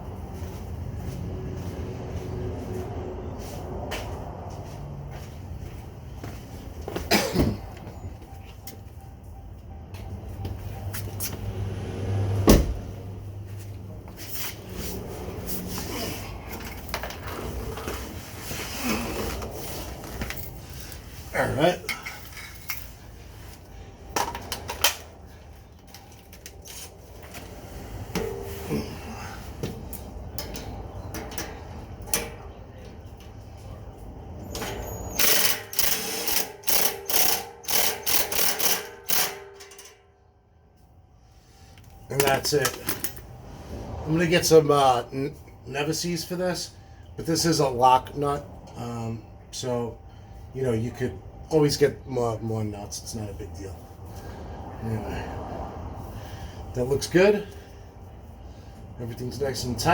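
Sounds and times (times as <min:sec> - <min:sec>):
steady low hum: 0:00.0 - 0:59.9
metal tools clunking and clinking: 0:16.0 - 0:18.2, 0:21.8 - 0:23.1, 0:42.1 - 0:43.3
cordless drill bursts: 0:35.2 - 0:39.3.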